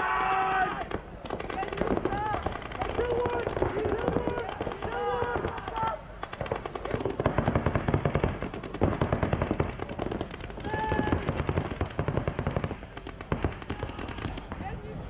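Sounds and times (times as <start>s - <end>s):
paintball markers firing rapidly: 0.0s - 14.7s.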